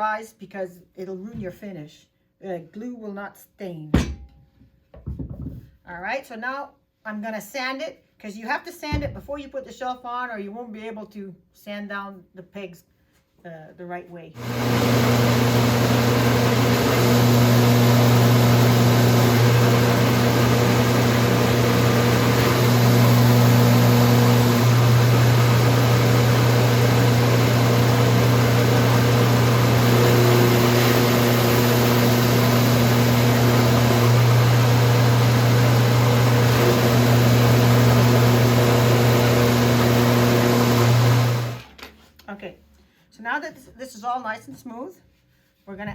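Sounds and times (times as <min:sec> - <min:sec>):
electric sander on wood: 0:14.4 - 0:41.7.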